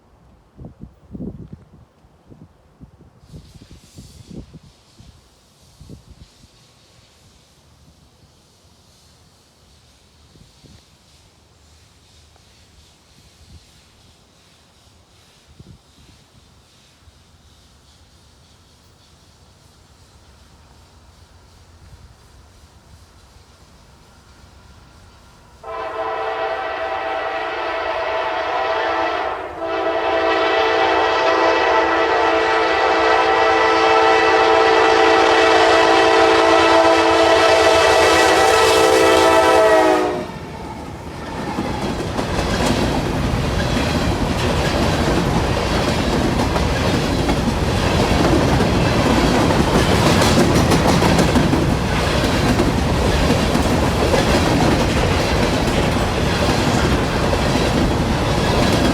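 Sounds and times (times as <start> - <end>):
locomotive air horn chord: 25.6 - 40.4
train wheels clattering over rails: 40.0 - 58.9.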